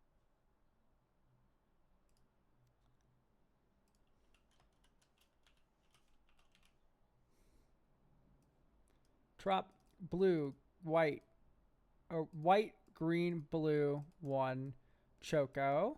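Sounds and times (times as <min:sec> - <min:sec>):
keyboard and mouse clicks: 0:03.8 - 0:06.8.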